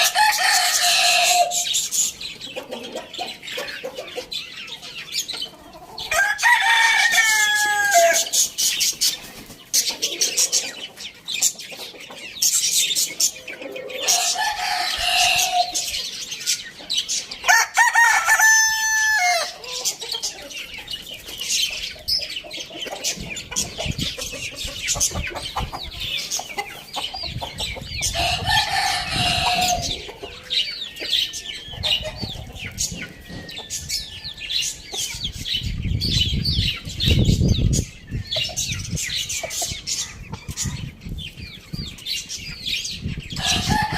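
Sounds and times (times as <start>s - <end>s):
rooster crowing: 0.0s - 1.7s, 6.1s - 8.3s, 14.0s - 15.9s, 17.5s - 19.6s, 28.1s - 30.0s, 43.4s - 43.9s
chickens clucking: 0.0s - 43.9s.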